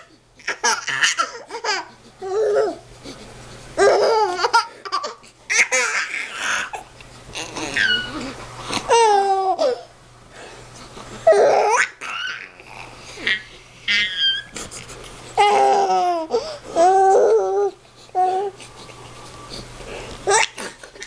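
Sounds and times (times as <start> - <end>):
baby laughing and squealing: 0.4 - 2.8, 3.8 - 6.8, 7.4 - 9.9, 11.2 - 14.6, 15.4 - 18.6, 20.2 - 21.0.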